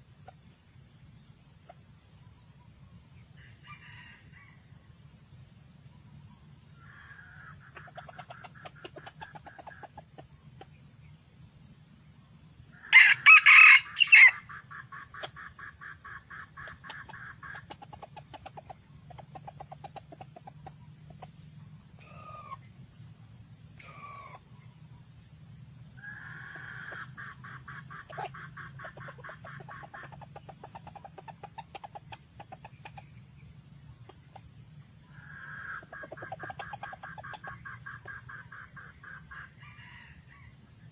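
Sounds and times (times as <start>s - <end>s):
rooster crowing: 12.8s - 14.5s
rapid pulsing clucking: 15.1s - 21.4s.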